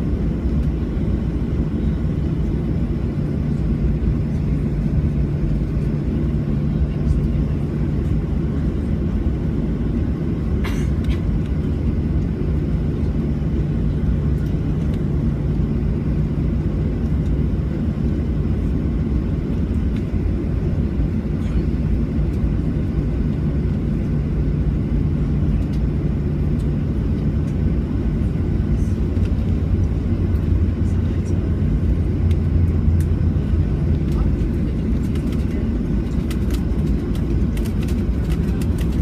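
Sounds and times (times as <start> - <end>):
jet engine cabin drone: 0.0 - 39.0.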